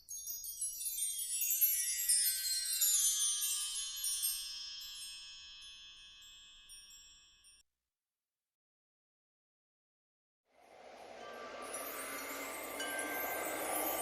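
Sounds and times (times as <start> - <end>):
high chimes sweeping downward: 10.6 - 14.0.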